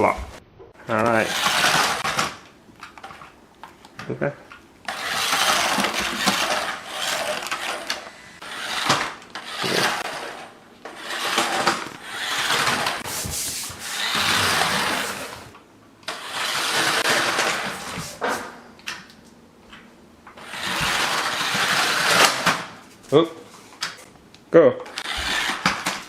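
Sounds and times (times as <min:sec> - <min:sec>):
toy truck motor whirring: 0:01.1 - 0:02.4, 0:04.9 - 0:13.0, 0:13.9 - 0:15.5, 0:16.1 - 0:17.8, 0:20.4 - 0:22.5, 0:24.9 - 0:26.0.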